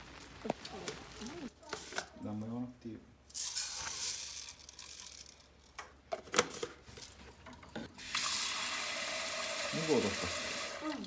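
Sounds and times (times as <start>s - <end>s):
rustling and crinkling: 0.0s - 2.2s
water running: 8.0s - 11.0s.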